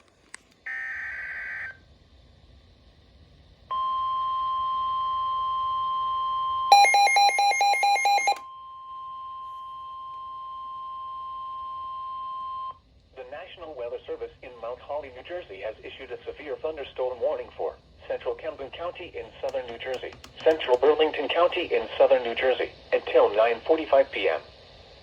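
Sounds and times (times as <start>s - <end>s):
steady warning alarm tone: 0.7s - 1.8s, 3.7s - 12.4s.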